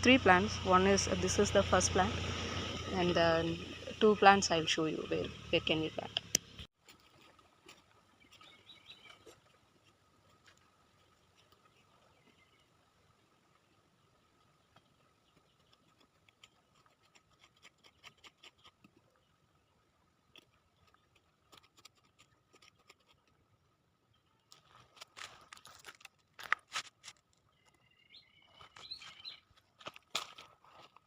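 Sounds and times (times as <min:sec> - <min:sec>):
soil scraping and crackling: 0:05.1 - 0:12.6, 0:24.3 - 0:31.0
bird chirps: 0:08.2 - 0:09.4, 0:27.5 - 0:29.5.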